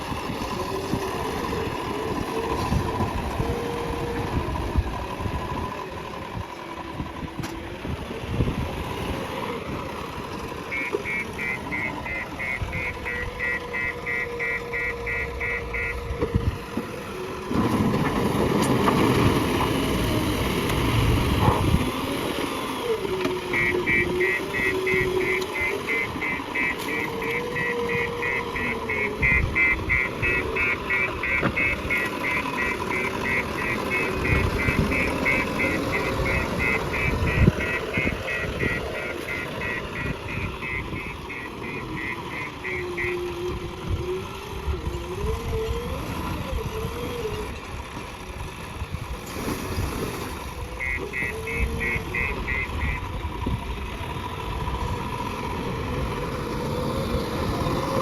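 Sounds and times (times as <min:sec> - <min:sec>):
diesel engine of backhoe loader: 0:00.0 - 0:58.0
rapid high beeping: 0:10.7 - 0:16.0, 0:23.5 - 0:43.2, 0:50.8 - 0:53.0.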